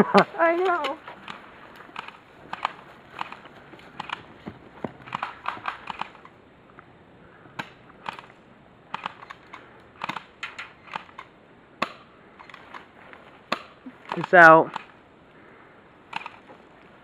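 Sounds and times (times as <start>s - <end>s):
airsoft guns firing: 4.9s - 6.3s.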